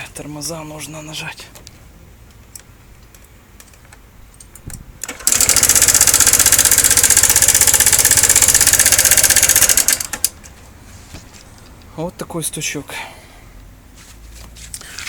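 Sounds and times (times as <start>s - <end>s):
scooter engine starting and running: 5.0s - 10.4s
rapid engine knock: 5.3s - 10.0s.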